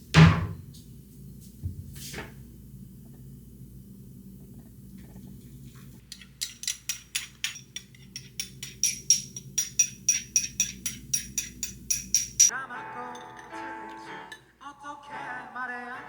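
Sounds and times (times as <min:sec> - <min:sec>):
closed hi-hat tapping: 0:08.2 - 0:12.5.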